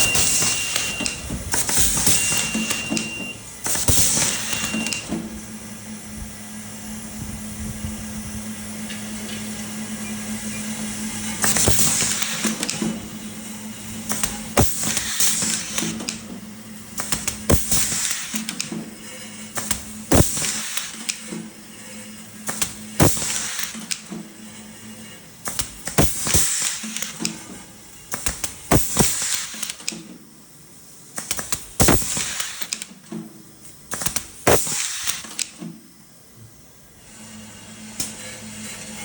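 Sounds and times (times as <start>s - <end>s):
steady low hum: 0.0s - 23.4s
rivet gun snap: 11.4s - 13.0s, 14.1s - 16.4s, 17.0s - 18.9s, 28.1s - 30.1s, 31.2s - 33.2s, 33.9s - 35.7s.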